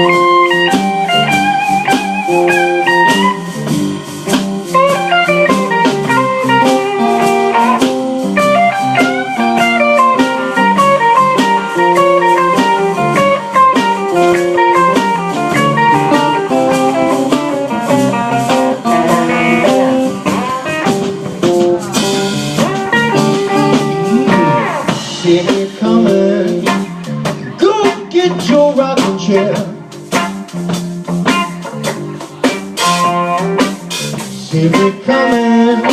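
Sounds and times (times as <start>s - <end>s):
electric guitar solo: 0.0s - 25.5s
blues band playing: 0.0s - 35.9s.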